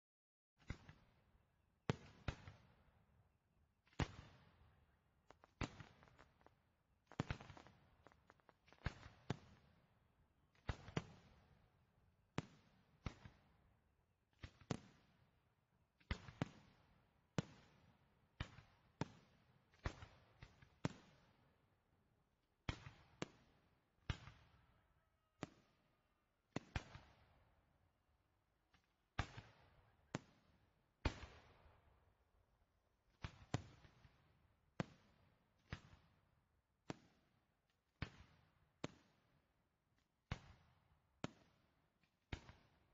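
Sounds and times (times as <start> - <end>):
fireworks exploding: 5.2 - 9.1.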